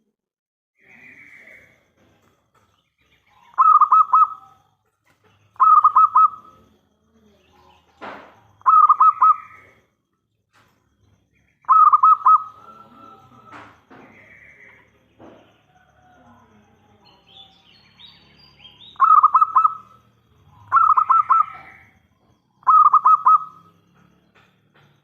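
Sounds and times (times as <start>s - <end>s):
dove cooing: 3.4s - 4.6s, 5.5s - 6.7s, 8.5s - 9.8s, 11.6s - 15.4s, 18.9s - 23.8s.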